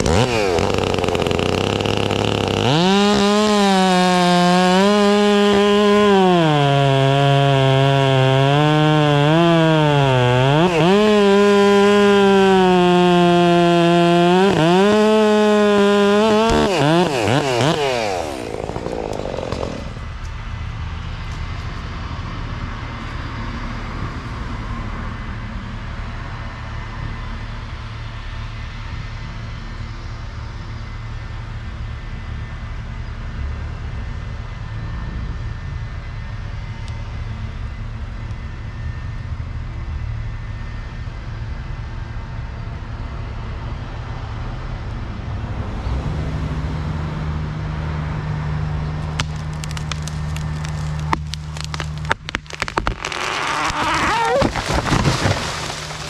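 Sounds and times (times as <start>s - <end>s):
chainsaw running: 0.0s - 20.3s, 49.0s - 56.0s.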